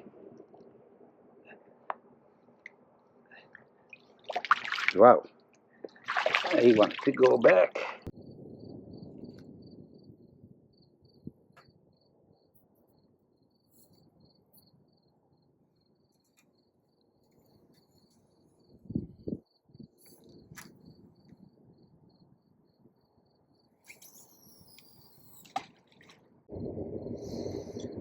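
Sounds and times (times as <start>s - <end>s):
insect chirping: 5.5s - 7.6s, 8.2s - 28.0s.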